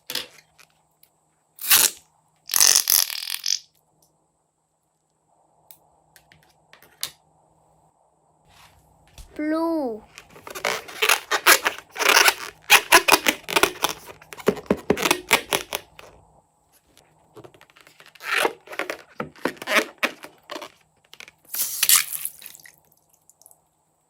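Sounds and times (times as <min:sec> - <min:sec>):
balloon rubber tearing and snipping: 0:01.6 - 0:03.6, 0:10.3 - 0:16.1, 0:17.7 - 0:20.8, 0:21.5 - 0:22.4.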